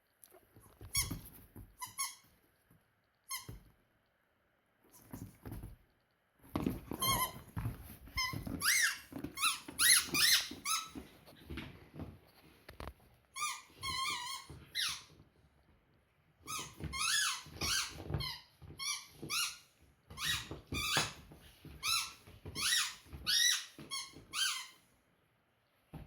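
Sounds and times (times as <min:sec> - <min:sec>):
squeaky toy squeaks: 0:00.9 - 0:01.2, 0:01.8 - 0:02.3, 0:03.3 - 0:03.6, 0:06.9 - 0:07.5, 0:08.2 - 0:11.0, 0:13.4 - 0:15.2, 0:16.4 - 0:21.2, 0:21.8 - 0:24.8.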